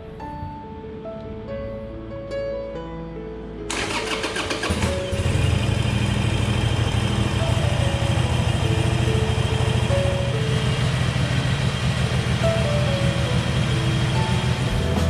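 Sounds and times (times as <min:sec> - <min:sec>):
motorcycle engine rumbling: 0:14.7 - 0:15.0.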